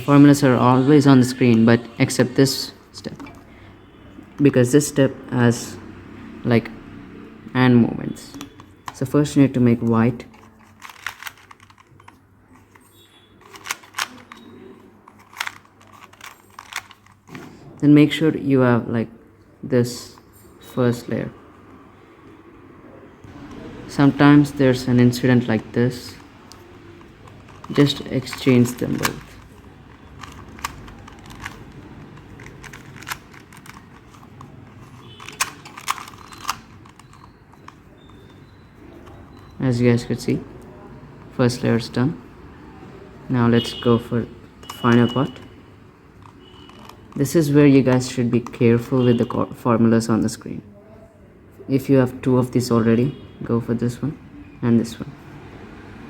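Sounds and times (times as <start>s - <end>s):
plastic puzzle cube clicking: 8.3s - 17.5s, 25.5s - 39.6s, 46.1s - 48.9s.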